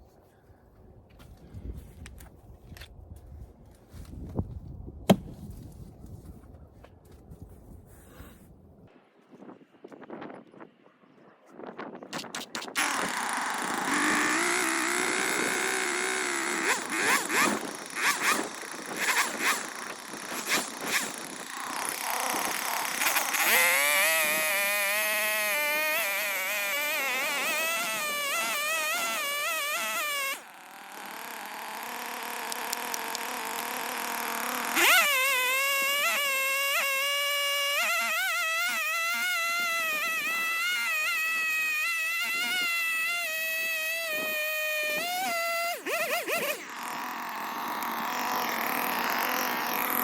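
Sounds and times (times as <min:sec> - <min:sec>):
chainsaw revving: 0:12.7 - 0:50.0.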